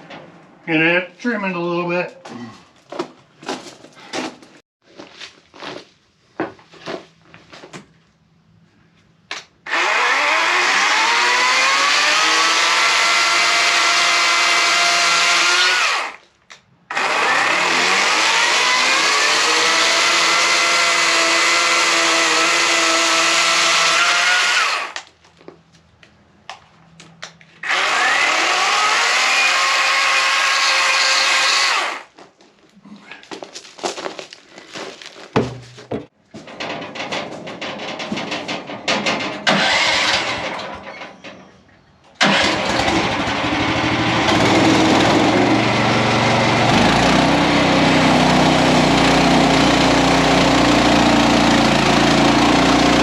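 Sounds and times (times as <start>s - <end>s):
sawmill engine revving and idling: 9.7s - 16.2s, 16.9s - 25.0s, 27.6s - 32.1s, 39.4s - 40.8s, 42.2s - 53.0s.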